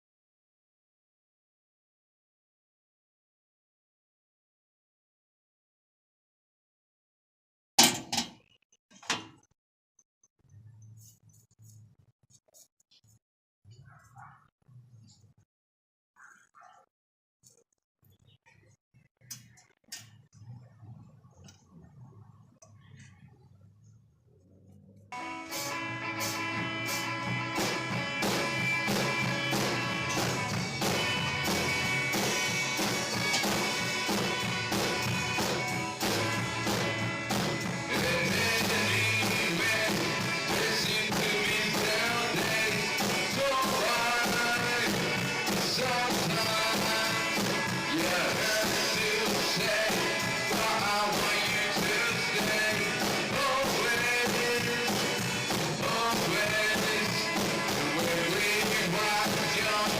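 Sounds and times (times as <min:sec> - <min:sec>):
bass line: 0:24.5 - 0:59.9
rock band playing: 0:25.2 - 0:59.9
rock guitar: 0:25.2 - 0:59.9.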